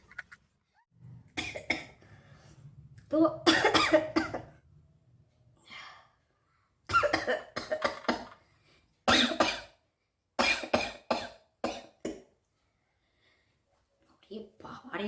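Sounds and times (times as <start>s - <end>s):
person coughing: 3.5s - 4.6s, 6.9s - 8.4s.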